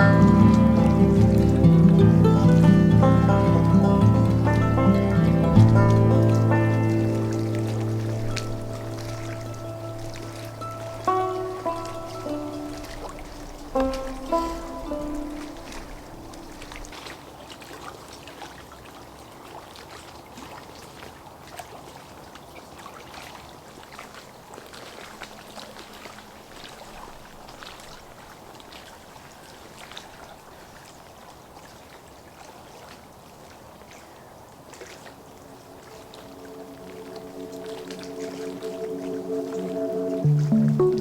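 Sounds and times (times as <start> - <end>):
small splashes: 0.0 - 41.0
water trickling and lapping: 0.0 - 41.0.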